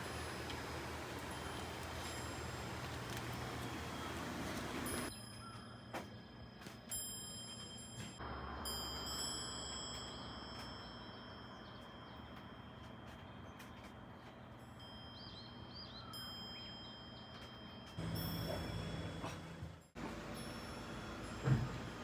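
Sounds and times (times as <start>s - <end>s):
iron wind chime ringing: 0.0s - 13.6s, 14.5s - 22.0s.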